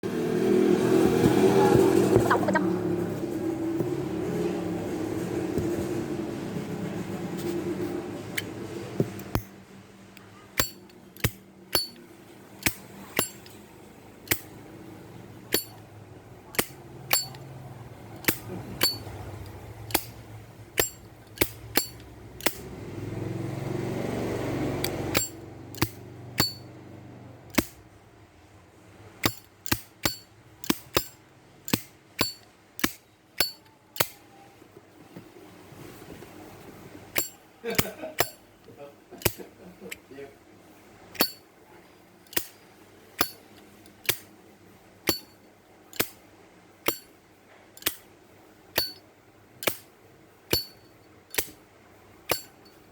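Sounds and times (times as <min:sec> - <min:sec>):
handling rumble: 0:00.0 - 0:09.8.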